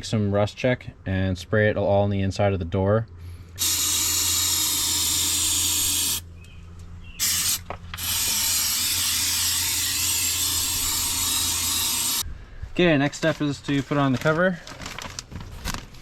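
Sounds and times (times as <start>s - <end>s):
spray can hissing: 3.6s - 6.2s, 7.2s - 12.2s.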